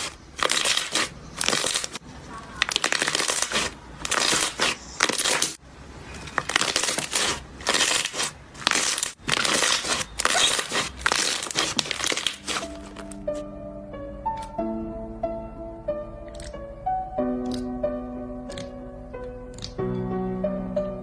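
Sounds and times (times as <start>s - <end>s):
slime crackling when squeezed: 0.0s - 5.6s, 6.2s - 13.4s
soft music: 12.0s - 21.0s.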